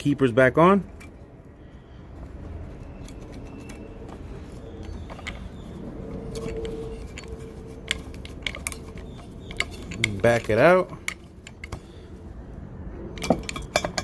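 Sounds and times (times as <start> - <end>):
low steady hum: 0.8 - 14.0
small metallic clicks: 2.9 - 12.0.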